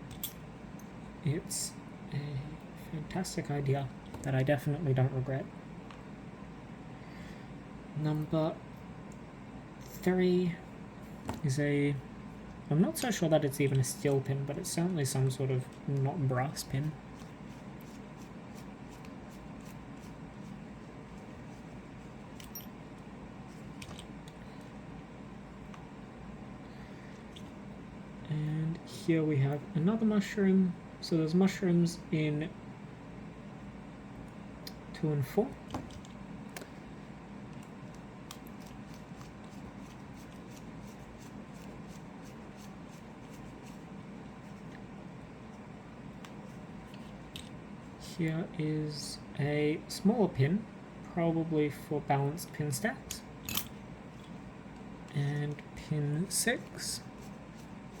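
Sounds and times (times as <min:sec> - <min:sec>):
low room hum: 0:00.0 - 0:58.0
tweezers and lock pins clicking: 0:53.5 - 0:53.8.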